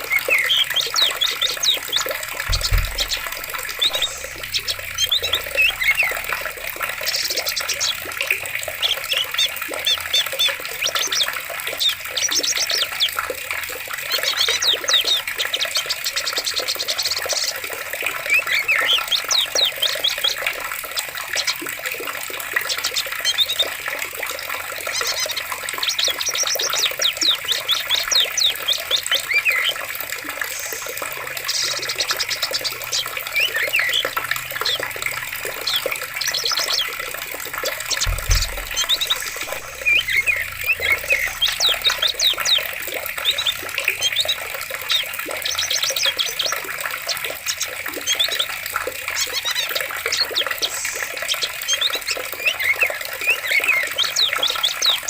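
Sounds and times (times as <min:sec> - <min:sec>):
stream water rushing: 0:00.0 - 0:09.5, 0:22.0 - 0:45.0
songbirds chirping: 0:00.0 - 0:13.4, 0:14.1 - 0:48.5.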